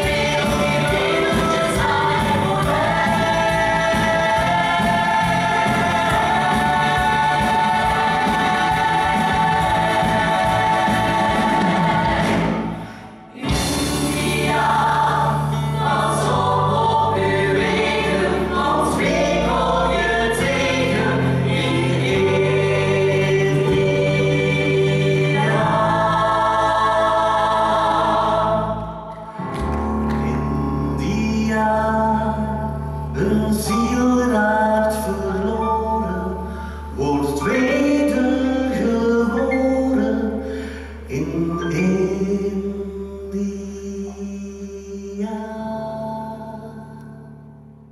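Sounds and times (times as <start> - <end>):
choir singing: 0.0 - 29.5
sustained bass accompaniment: 0.0 - 47.9.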